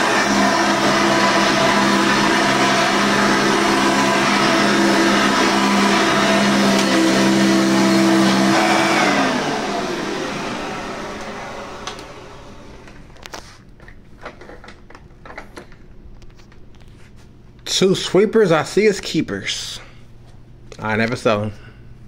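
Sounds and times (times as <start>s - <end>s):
vacuum cleaner motor: 0.0s - 13.4s.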